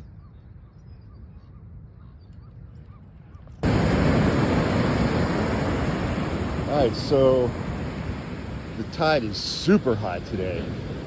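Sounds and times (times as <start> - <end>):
wind: 0.0 - 11.0
surf rushing: 3.6 - 11.0.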